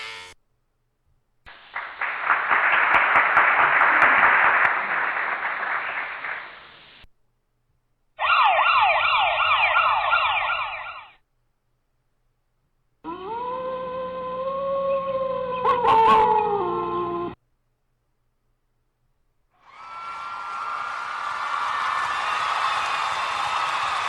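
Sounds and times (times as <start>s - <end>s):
siren yelping: 8.2s - 11.2s, 13.1s - 17.4s.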